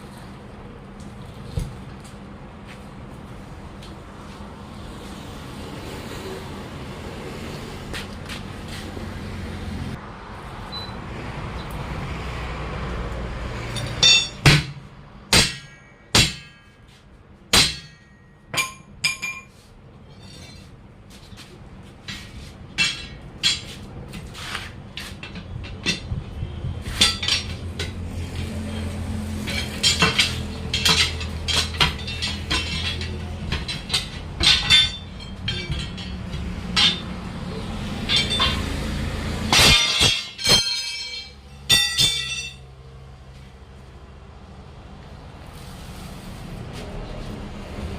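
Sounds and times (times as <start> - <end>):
hammer striking steel rim: 13.8 - 19.5, 29.5 - 42.6.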